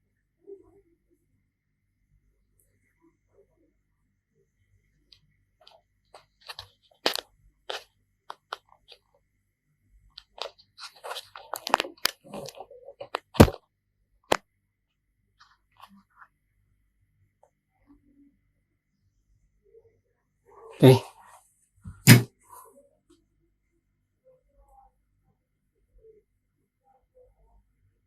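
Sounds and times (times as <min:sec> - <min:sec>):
sharp knock: 0:21.9 - 0:22.3.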